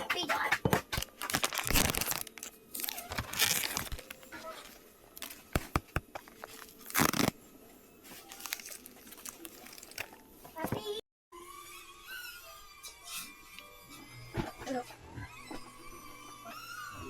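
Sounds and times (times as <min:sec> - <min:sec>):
rustling and crinkling: 0:00.8 - 0:07.4, 0:08.0 - 0:10.9.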